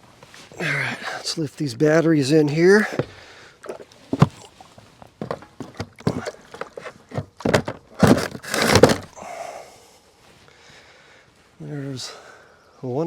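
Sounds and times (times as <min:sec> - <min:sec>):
battery knocks and clunks: 0:05.2 - 0:09.1.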